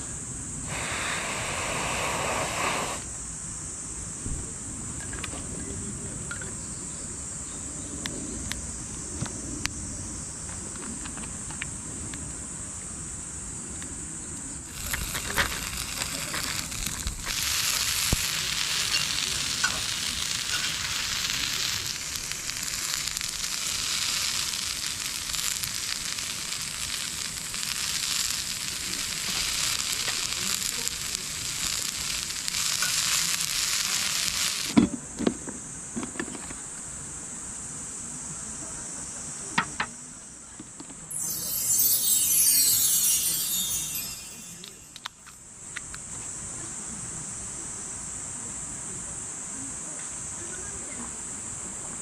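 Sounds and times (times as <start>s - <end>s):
food sizzling in a pan: 0.7s - 3.0s, 14.7s - 34.8s, 41.1s - 45.4s.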